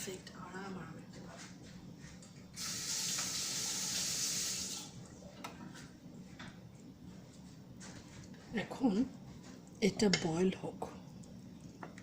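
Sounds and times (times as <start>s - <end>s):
tap water running: 2.6s - 5.0s.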